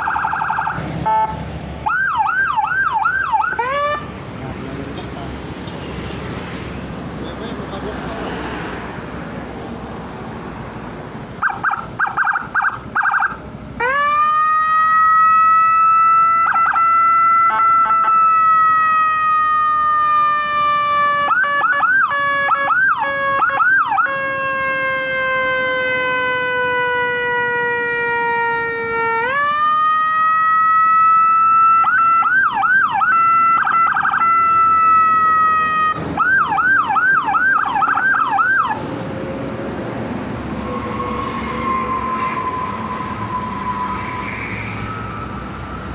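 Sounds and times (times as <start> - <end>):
fast warbling siren yelp: 0.0 - 4.1, 11.4 - 38.8, 40.5 - 45.9
siren chirps: 0.0 - 4.1, 11.4 - 38.8, 40.5 - 45.9
siren wail: 0.0 - 4.1, 11.4 - 39.4, 40.4 - 45.9.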